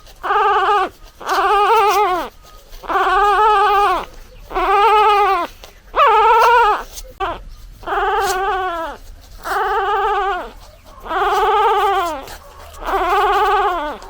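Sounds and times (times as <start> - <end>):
puppy crying: 0.0 - 14.0
puppy yelp: 0.0 - 14.0.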